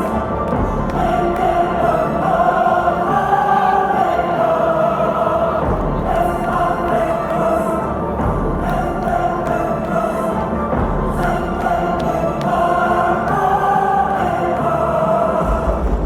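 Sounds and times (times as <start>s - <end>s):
choir-like synth chords: 0.0s - 16.0s
deep bass drum beat: 0.5s - 2.6s, 5.6s - 7.0s, 8.2s - 9.8s, 10.7s - 12.2s, 15.4s - 16.0s.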